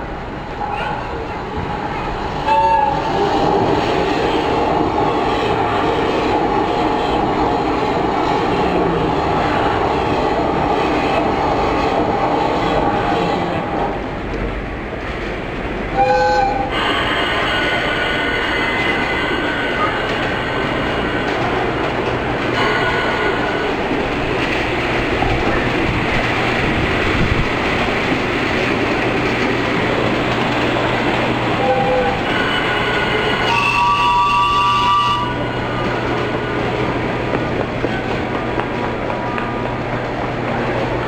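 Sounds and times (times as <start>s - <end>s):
train rumbling over loudspeakers: 0.0s - 41.0s.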